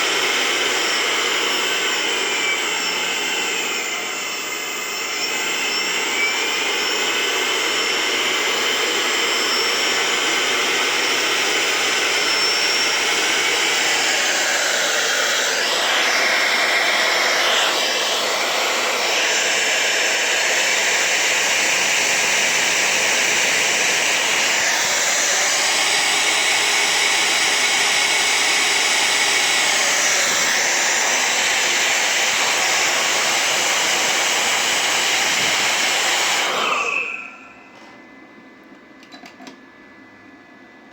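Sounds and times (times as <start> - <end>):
blower motor whine: 0.0 - 40.9.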